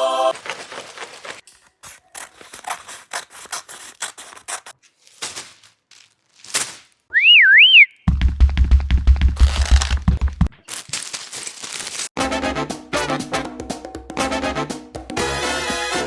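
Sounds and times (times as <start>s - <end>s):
scissors snipping packaging: 0.3s - 7.0s, 9.4s - 10.0s, 10.6s - 12.2s
wavering whistle sound effect: 7.1s - 8.0s.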